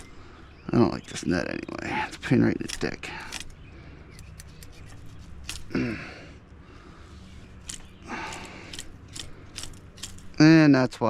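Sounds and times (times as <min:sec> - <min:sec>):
snips cutting net mesh: 0:04.3 - 0:05.7
person grunting: 0:05.7 - 0:06.4.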